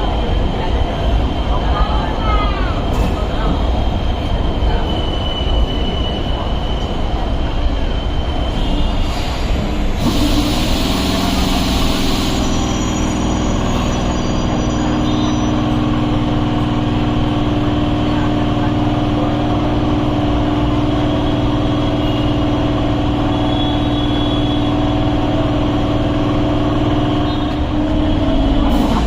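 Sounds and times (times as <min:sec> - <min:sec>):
steady train hum: 0:00.0 - 0:29.0
train rumbling on rails: 0:00.0 - 0:29.0
wheel squeal: 0:07.8 - 0:15.9, 0:20.9 - 0:25.4, 0:27.0 - 0:29.0
loud air hiss: 0:09.0 - 0:14.2.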